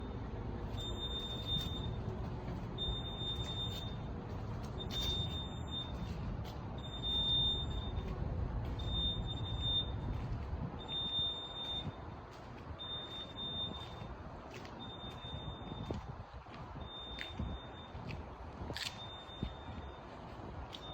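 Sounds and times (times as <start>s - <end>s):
steady low rumble: 0.0s - 20.9s
fire alarm high-pitched beep: 0.7s - 2.1s, 2.8s - 6.2s, 6.8s - 8.1s, 8.8s - 12.0s, 12.8s - 14.1s, 14.8s - 16.0s, 16.8s - 18.1s, 18.8s - 20.9s.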